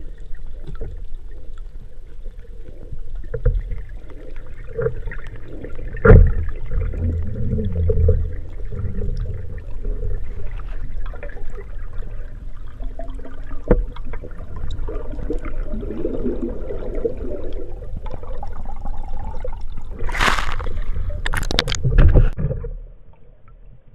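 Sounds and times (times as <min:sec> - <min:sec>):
water splashes: 0:00.0 - 0:23.4
underwater gurgling and bubbling: 0:00.0 - 0:23.9.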